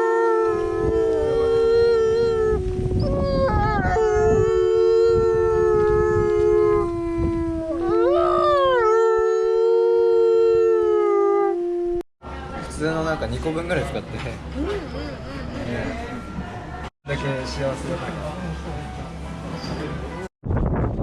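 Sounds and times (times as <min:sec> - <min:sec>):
dogs howling in chorus: 0:00.0 - 0:09.6.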